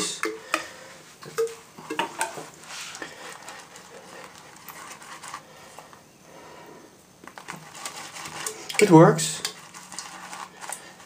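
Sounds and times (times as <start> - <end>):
shaving brush swishing in bowl: 2.6 - 5.5, 7.4 - 11.0.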